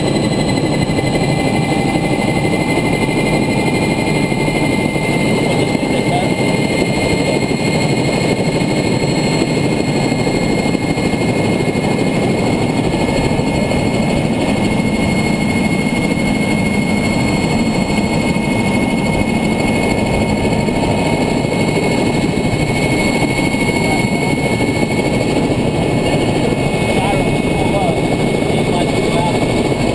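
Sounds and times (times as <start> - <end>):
helicopter turbine and rotor running: 0.0 - 29.9.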